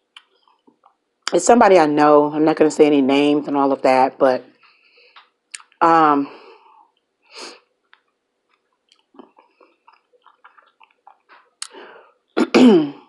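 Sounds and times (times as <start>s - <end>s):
person chewing food: 7.9s - 11.8s.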